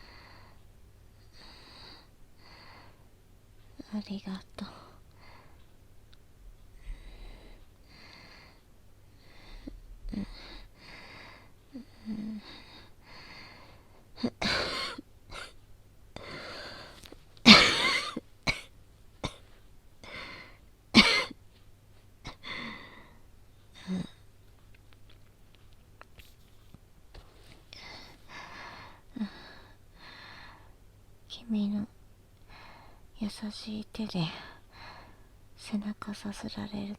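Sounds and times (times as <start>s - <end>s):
woman coughing hard: 14.2s - 15.6s, 17.4s - 19.5s, 20.9s - 21.4s
woman wheezy breathing: 16.2s - 17.1s, 22.3s - 24.2s.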